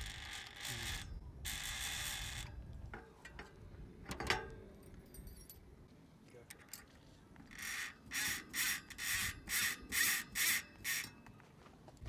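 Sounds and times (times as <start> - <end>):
bicycle freehub ratchet buzzing: 0.0 - 2.6, 7.5 - 11.3.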